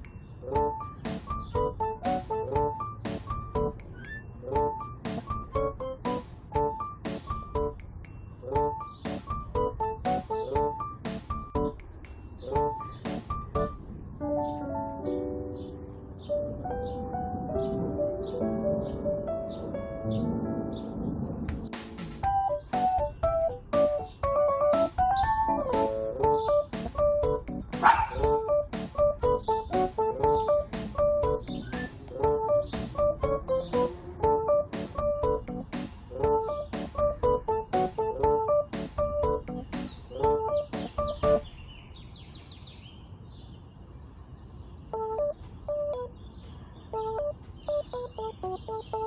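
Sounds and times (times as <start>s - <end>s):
bouncy keyboard melody: 0.0s - 41.6s, 44.9s - 46.3s, 46.9s - 49.0s
descending high bird chirps: 0.3s - 1.8s, 2.8s - 5.7s, 22.4s - 43.0s
drum beat: 21.5s - 25.8s, 26.6s - 41.4s.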